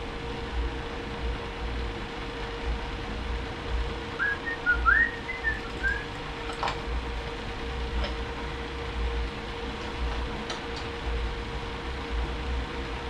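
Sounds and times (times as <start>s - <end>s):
steady hum: 0.0s - 13.0s
person whistling: 4.2s - 6.1s.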